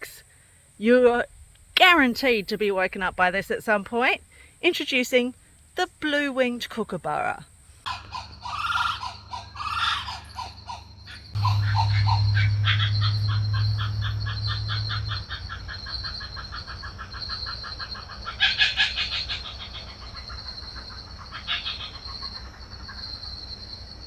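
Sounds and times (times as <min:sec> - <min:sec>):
high insect drone: 0:07.2 - 0:24.0
kookaburra cackling call: 0:07.9 - 0:23.2
low hum: 0:10.9 - 0:17.0.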